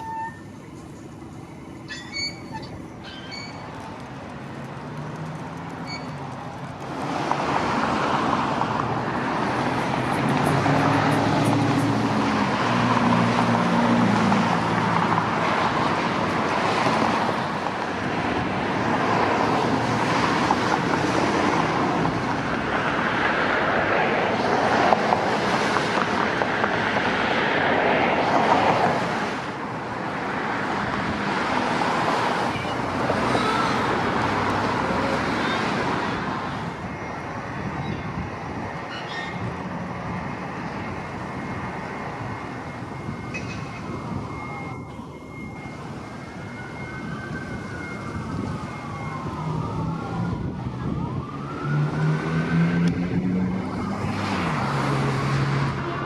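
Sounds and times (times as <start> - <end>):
road traffic passing: 0.0 - 56.0.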